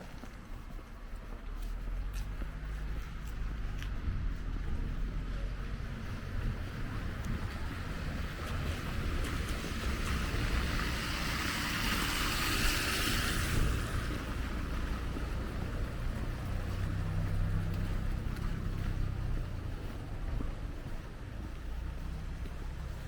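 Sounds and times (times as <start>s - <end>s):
vehicle engine humming: 0.0s - 23.0s
car passing: 1.6s - 23.0s.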